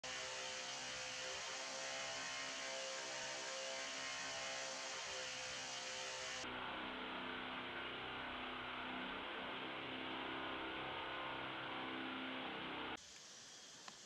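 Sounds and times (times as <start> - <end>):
steady tonal hum: 0.2 - 13.0
hiss: 13.0 - 14.0.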